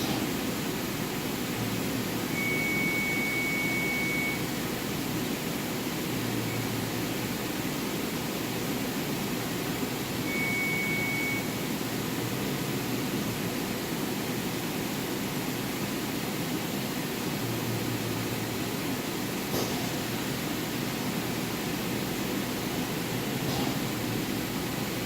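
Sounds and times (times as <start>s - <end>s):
machine hum and hiss: 0.0s - 25.0s.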